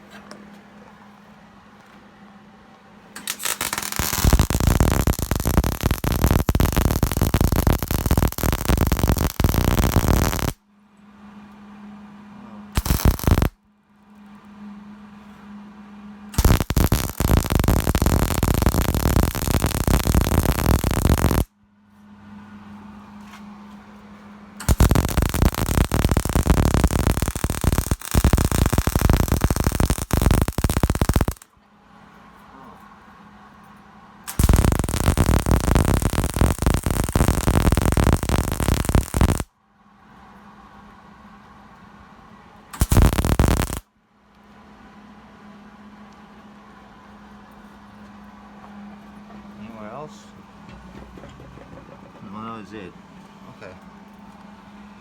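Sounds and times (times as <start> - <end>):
welder crackling: 3.2 - 10.6, 12.8 - 13.6, 16.4 - 21.5, 24.6 - 31.5, 34.3 - 39.5, 42.8 - 43.8
welder humming: 3.2 - 10.6, 12.8 - 13.6, 16.4 - 21.5, 24.6 - 31.4, 34.3 - 39.5, 42.8 - 43.8.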